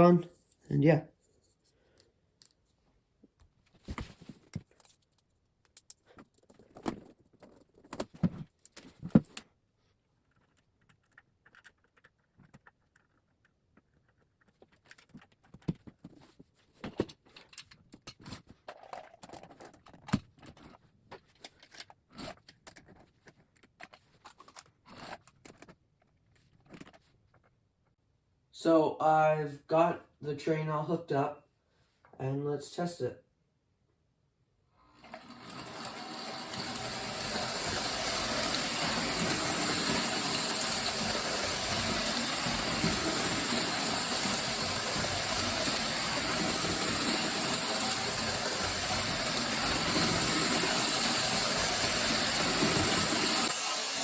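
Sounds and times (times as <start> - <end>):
plastic and metal parts clicking: 10.2 - 16.2, 16.8 - 27.5.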